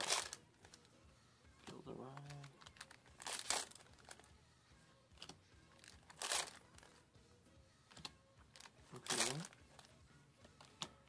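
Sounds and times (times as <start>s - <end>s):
foil wrapper tearing and crinkling: 2.4s - 4.2s, 6.0s - 6.6s.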